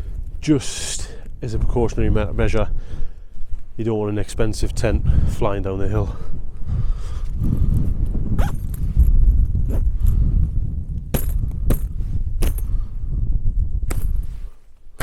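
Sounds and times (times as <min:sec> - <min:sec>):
wind buffeting microphone: 0:00.0 - 0:15.0
tent gear clicks and clinks: 0:08.4 - 0:10.2, 0:11.1 - 0:12.8, 0:13.9 - 0:15.0.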